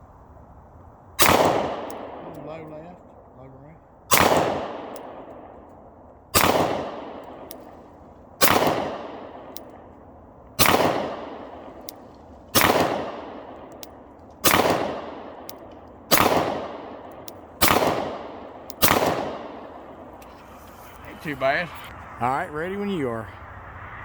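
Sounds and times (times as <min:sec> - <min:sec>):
pistol shots with echo: 0:01.2 - 0:02.8, 0:04.1 - 0:20.2.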